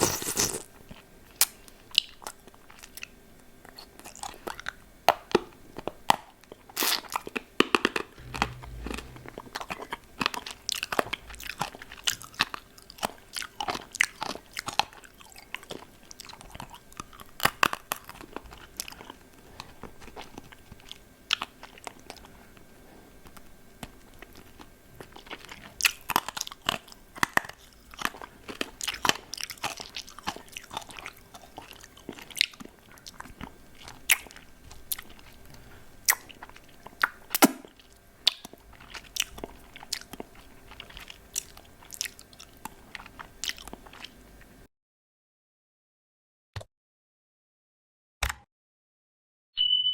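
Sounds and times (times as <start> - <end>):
lollipop being crunched: 0.0 - 0.6.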